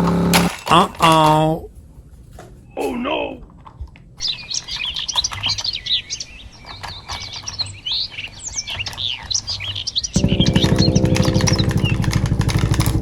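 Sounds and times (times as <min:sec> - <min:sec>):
motor rattling buzz: 0:00.0 - 0:00.6, 0:10.2 - 0:13.0
birds chirping: 0:00.0 - 0:13.0.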